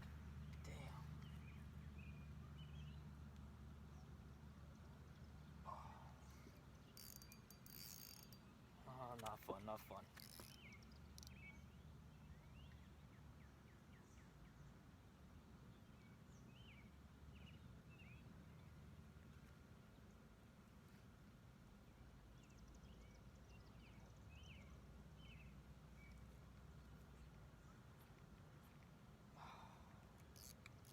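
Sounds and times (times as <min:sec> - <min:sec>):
faint low background rumble: 0:00.0 - 0:07.6.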